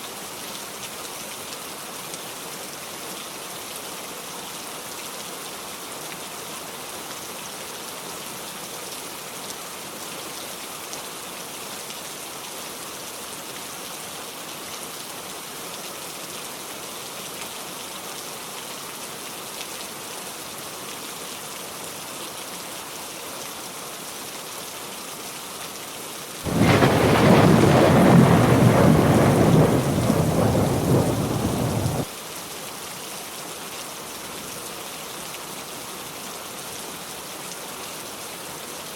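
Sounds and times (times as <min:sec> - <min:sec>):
heavy rain: 0:26.5 - 0:32.1
thunder rumble: 0:26.5 - 0:32.1.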